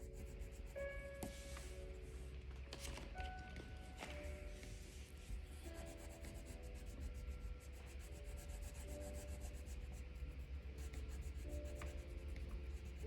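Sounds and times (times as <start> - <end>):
pencil scratching on paper: 0.0 - 1.7, 4.8 - 13.0
faint background music: 0.0 - 13.0.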